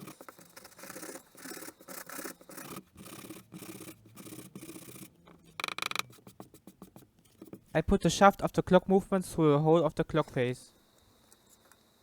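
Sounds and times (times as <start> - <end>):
sandpaper rubbing on cardboard: 0.0 - 5.1.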